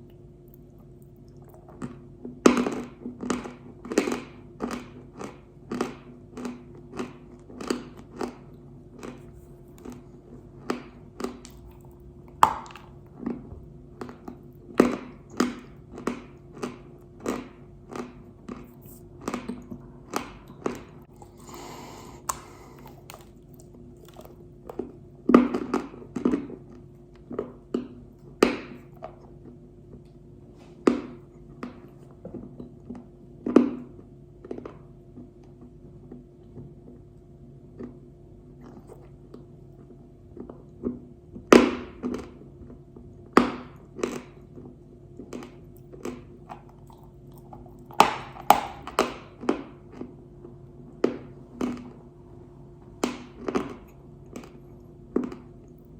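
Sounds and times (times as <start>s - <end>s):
clay being bitten and chewed: 0.0s - 27.5s, 43.5s - 50.2s
faint steady hum: 0.0s - 55.9s.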